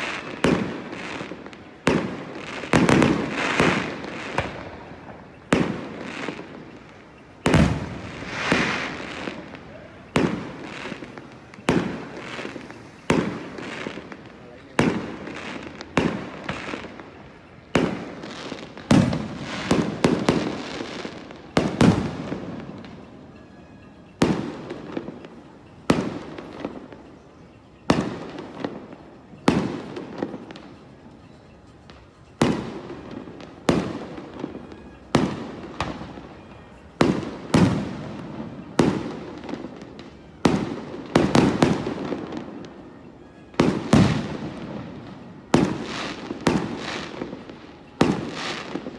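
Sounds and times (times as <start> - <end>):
firework shells bursting: 0.0 - 17.0.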